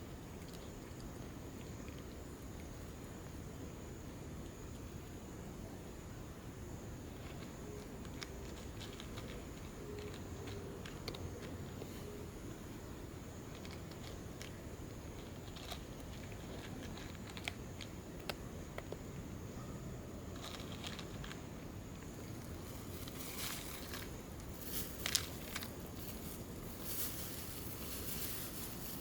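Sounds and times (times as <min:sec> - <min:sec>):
cat chewing food crunches: 0:07.1 - 0:12.0, 0:13.4 - 0:19.1, 0:20.2 - 0:29.0.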